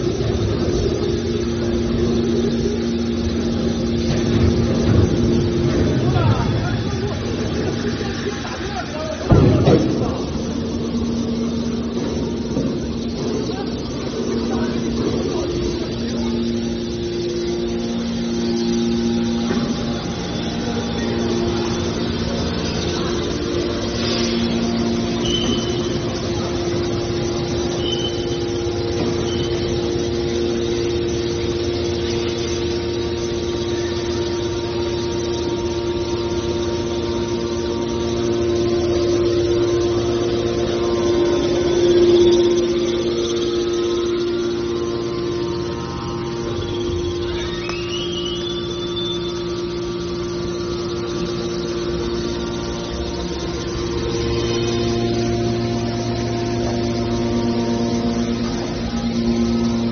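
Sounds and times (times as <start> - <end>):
baler machine hum: 0.0 - 59.9.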